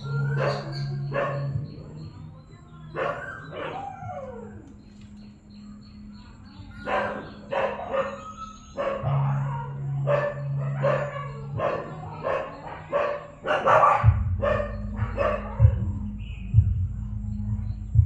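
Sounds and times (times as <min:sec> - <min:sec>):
dog barking: 0:00.0 - 0:02.1, 0:02.9 - 0:04.4, 0:06.7 - 0:16.1
steady low hum: 0:09.0 - 0:18.0.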